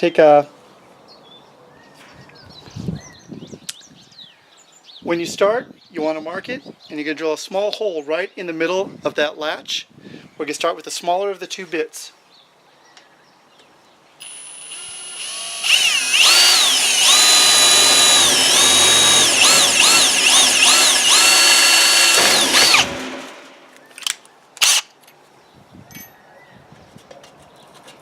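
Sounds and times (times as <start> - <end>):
electric drill whining: 14.2 - 23.5, 24.6 - 24.8.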